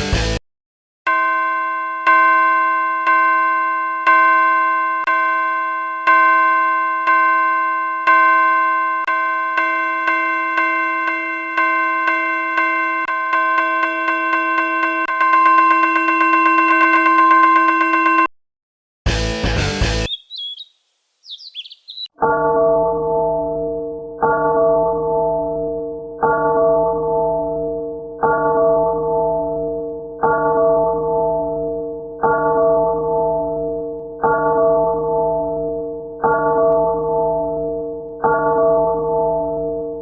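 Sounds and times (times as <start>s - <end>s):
railroad crossing warning bell: 1.1s - 18.3s.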